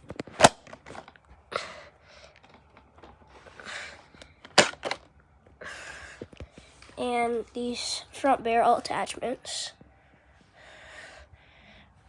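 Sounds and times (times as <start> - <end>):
plastic parts scraping and rustling: 0.0 - 1.2, 2.2 - 5.1
plastic snap: 0.0 - 1.2, 4.2 - 5.1.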